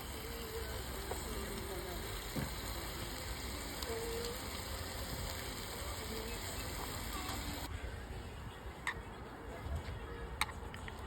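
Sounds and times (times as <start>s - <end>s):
steady background hiss: 0.0s - 7.7s
faint indistinct voices: 0.0s - 11.0s.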